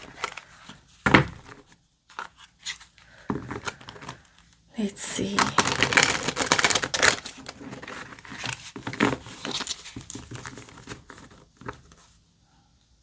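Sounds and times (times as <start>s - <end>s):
cards being shuffled: 5.1s - 11.9s.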